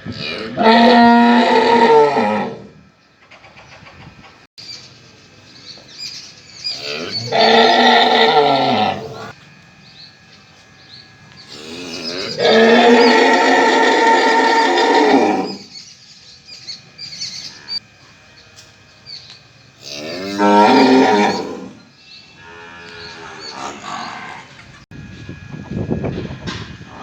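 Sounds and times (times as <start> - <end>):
cow mooing loudly: 0.0 - 2.8, 6.8 - 9.4, 11.5 - 15.7, 19.8 - 24.6.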